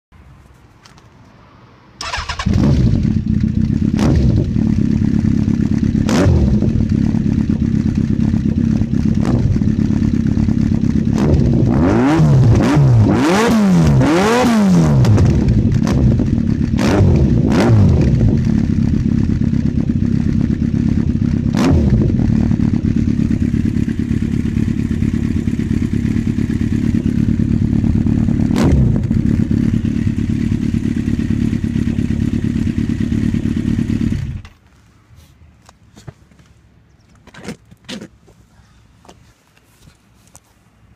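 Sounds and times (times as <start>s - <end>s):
motorcycle engine revving: 2.0s - 34.6s.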